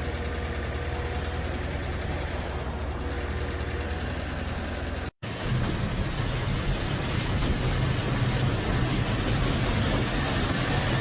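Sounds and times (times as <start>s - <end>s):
engine low rumble: 0.0s - 11.0s
different low rumble: 2.4s - 11.0s.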